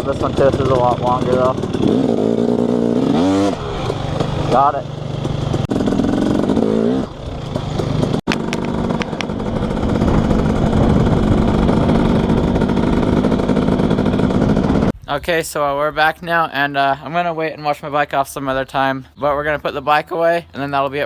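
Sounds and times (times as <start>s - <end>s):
dirt bike engine revving: 0.0s - 14.9s.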